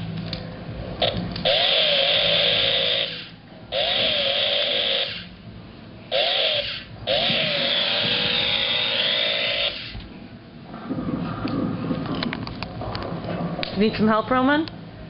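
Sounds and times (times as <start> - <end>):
toy chainsaw buzzing rev: 1.5 - 5.3, 6.1 - 9.9.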